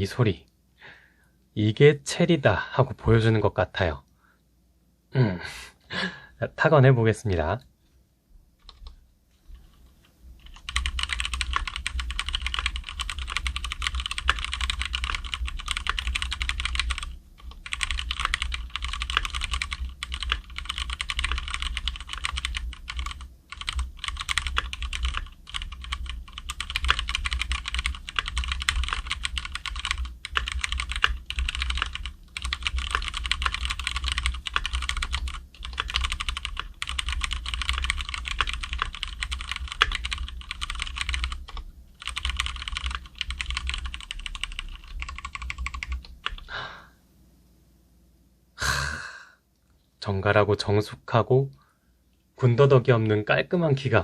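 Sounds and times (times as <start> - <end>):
fast mechanical keyboard typing: 10.4 - 46.5.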